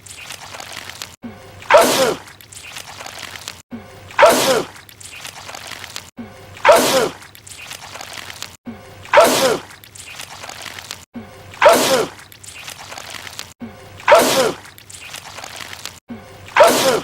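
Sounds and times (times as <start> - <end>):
man sneezing loudly: 14.1 - 14.6, 16.6 - 17.0.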